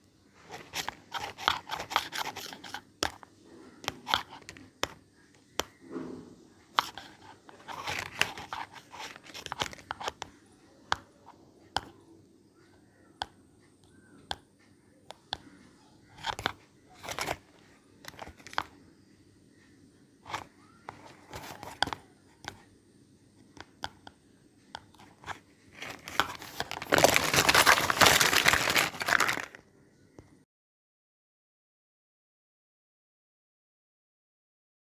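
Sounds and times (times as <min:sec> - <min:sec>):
packaging crinkling and tearing: 0:25.8 - 0:29.6.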